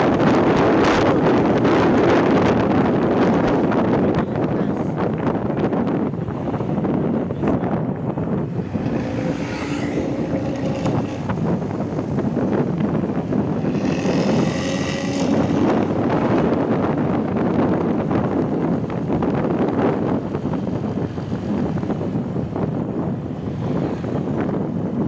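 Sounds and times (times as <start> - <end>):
bus engine with snoring exhaust: 0.0 - 5.6, 6.4 - 25.0
road and wind noise: 0.0 - 25.0.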